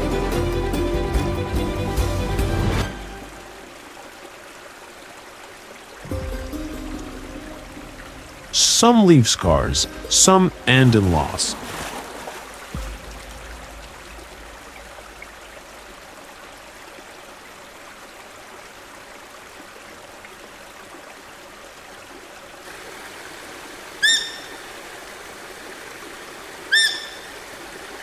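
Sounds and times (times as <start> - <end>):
water rushing: 0.0 - 28.0
short high clear calls: 24.0 - 25.0, 26.7 - 27.6.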